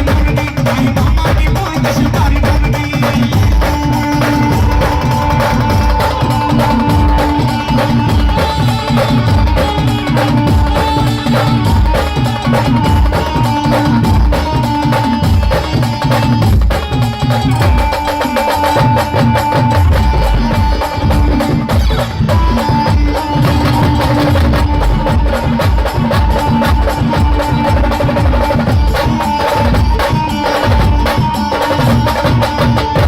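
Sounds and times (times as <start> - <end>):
driving drum beat: 0.0 - 33.0
sustained melodic line: 4.0 - 15.5.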